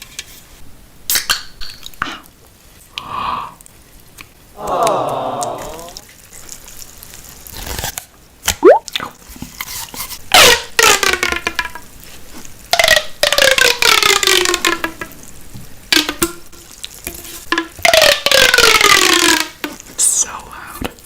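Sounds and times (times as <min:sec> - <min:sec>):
wet eating mouth sounds: 0:04.6 - 0:06.1, 0:08.6 - 0:09.2.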